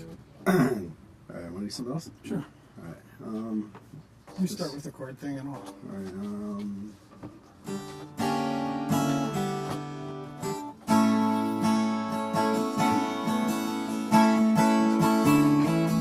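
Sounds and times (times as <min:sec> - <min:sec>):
acoustic guitar strumming: 0:07.5 - 0:16.0.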